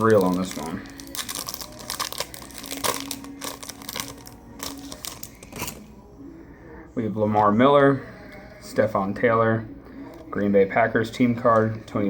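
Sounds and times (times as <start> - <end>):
foil wrapper crinkling: 0.0 - 5.9.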